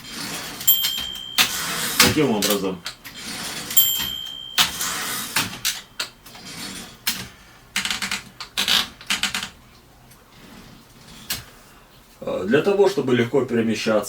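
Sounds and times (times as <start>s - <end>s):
typewriter clicking and clacking: 0.6s - 3.0s
typewriter bell ringing: 0.6s - 6.7s.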